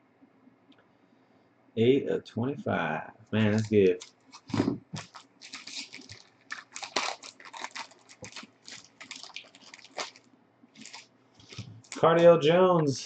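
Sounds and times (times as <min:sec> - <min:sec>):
plastic packaging crinkling: 0:03.4 - 0:12.2.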